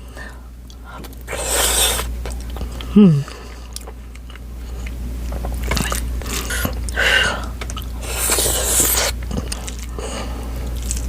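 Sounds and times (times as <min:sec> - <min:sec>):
wet chewing and biting: 0:03.5 - 0:10.0, 0:10.6 - 0:11.0.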